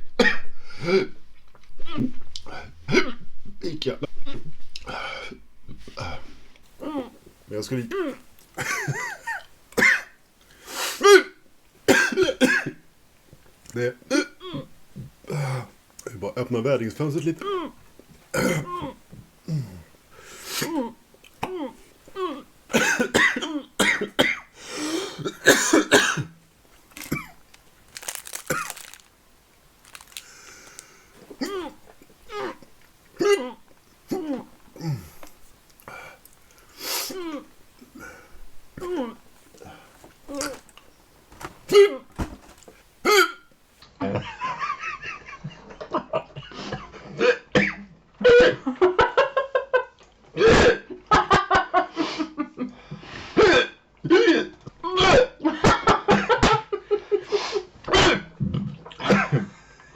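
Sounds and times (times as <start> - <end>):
man coughing: 6.8 - 10.2, 11.0 - 12.8, 17.4 - 17.8, 18.4 - 19.8, 20.6 - 26.4, 31.3 - 32.6, 33.2 - 35.2, 37.0 - 39.8, 41.7 - 42.5
person laughing: 8.6 - 9.4
man hiccuping: 17.4 - 17.8, 18.4 - 19.8, 25.3 - 26.2, 31.3 - 35.2, 38.8 - 40.6, 41.7 - 42.1, 43.1 - 43.4
person hiccupping: 18.4 - 26.4, 27.0 - 29.1, 29.8 - 43.4.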